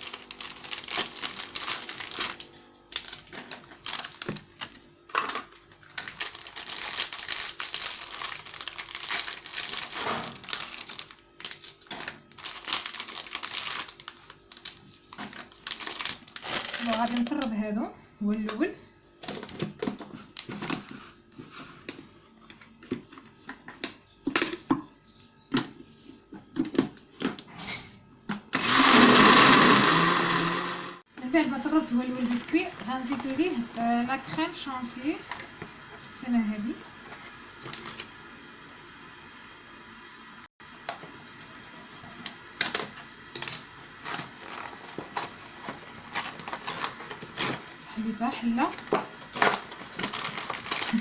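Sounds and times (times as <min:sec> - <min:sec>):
packet crinkling: 0:00.0 - 0:04.8, 0:05.5 - 0:17.5, 0:43.8 - 0:47.8, 0:48.4 - 0:51.0
food processor motor whirring: 0:28.5 - 0:31.0.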